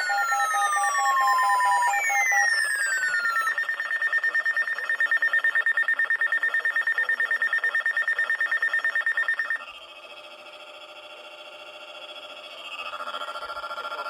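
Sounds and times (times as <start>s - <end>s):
pulsing electronic alarm beeps: 0.0s - 9.7s.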